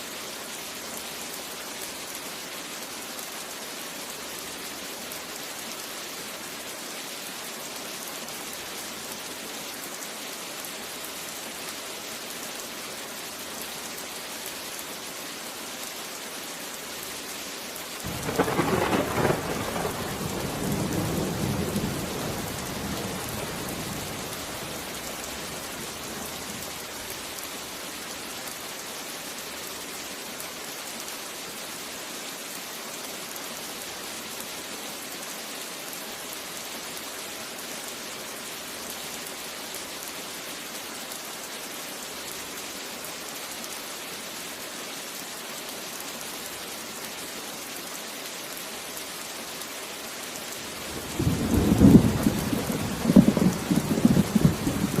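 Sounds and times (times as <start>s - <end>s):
steady rain falling: 0.0s - 55.0s
thunder rumbling: 18.1s - 26.6s, 50.8s - 55.0s.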